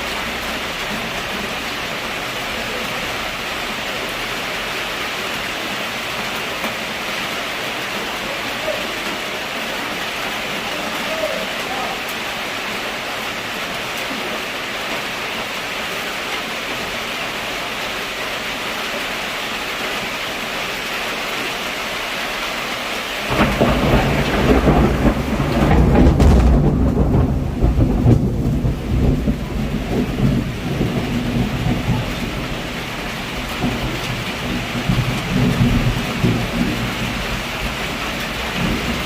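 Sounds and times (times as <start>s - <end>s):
heavy rain falling: 0.0s - 39.0s
deep rumble of thunder: 23.3s - 39.0s.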